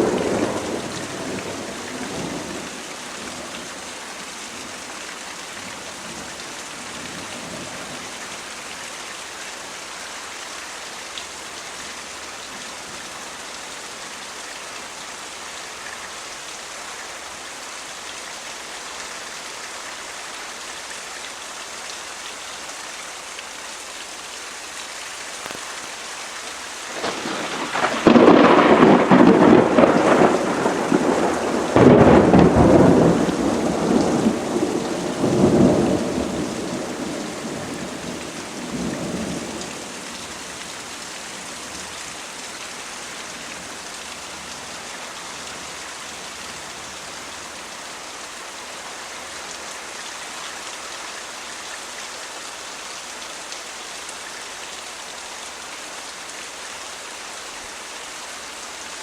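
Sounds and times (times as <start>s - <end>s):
steady rain: 0.0s - 59.0s
thunder crack and rumble: 26.9s - 37.4s.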